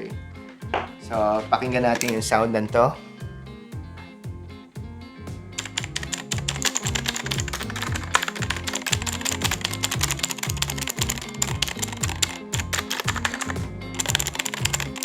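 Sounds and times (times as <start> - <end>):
background music with bass: 0.0 - 15.0
mechanical keyboard typing: 5.6 - 15.0.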